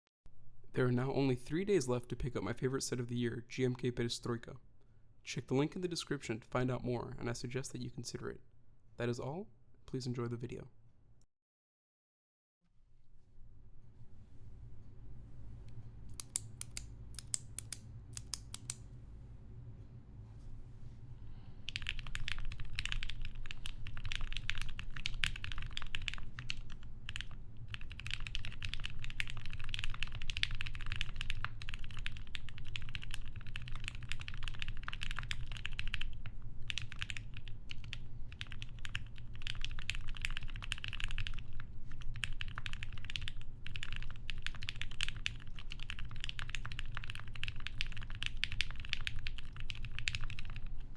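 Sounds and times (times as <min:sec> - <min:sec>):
sharp clicks: 0:16.1 - 0:18.8
fast mechanical keyboard typing: 0:21.7 - 0:50.9.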